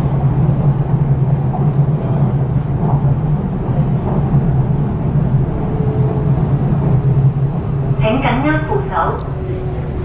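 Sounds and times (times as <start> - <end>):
train cabin drone: 0.0 - 10.0.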